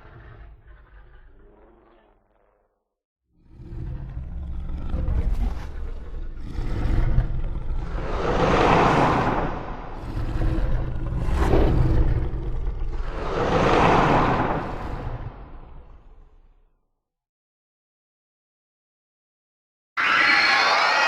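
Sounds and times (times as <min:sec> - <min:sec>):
monster roar: 0:03.4 - 0:16.2.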